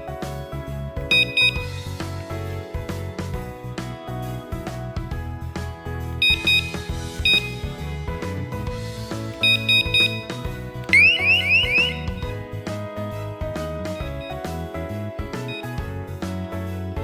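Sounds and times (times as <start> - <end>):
background music: 0.0 - 17.0
electronic alarm beeps: 1.1 - 1.9, 6.2 - 7.8, 9.4 - 12.4, 14.0 - 14.4, 15.5 - 15.8
rising siren whoops: 11.0 - 12.2.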